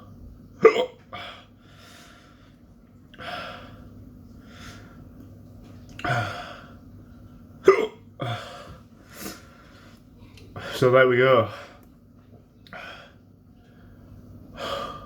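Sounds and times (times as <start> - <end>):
man hiccuping: 0.6 - 1.0, 7.6 - 8.1.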